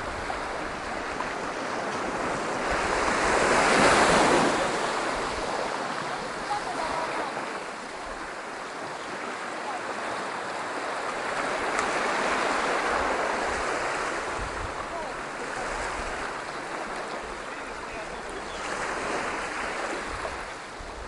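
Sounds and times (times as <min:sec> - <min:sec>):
waves washing onto a beach: 0:00.0 - 0:21.0
faint murmur of voices: 0:03.9 - 0:07.9, 0:14.7 - 0:19.2.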